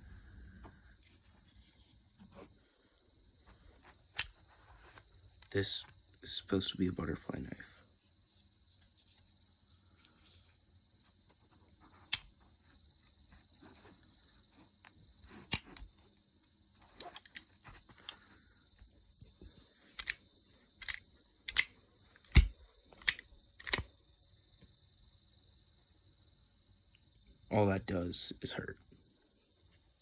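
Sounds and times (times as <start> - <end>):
butterfly knife metal clicks: 15.5 - 15.9, 20.0 - 20.2, 20.8 - 23.9.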